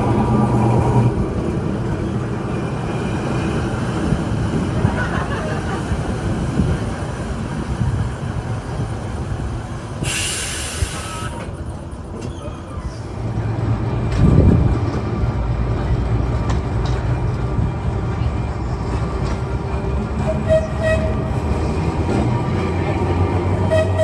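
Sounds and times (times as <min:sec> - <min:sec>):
tram wheels rumbling on rails: 0:00.0 - 0:24.0
burst of hiss: 0:10.0 - 0:11.4.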